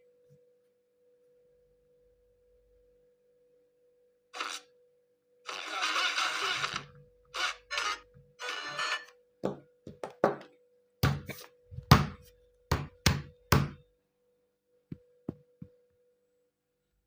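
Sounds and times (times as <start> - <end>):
faint steady tone: 13.8 - 17.0.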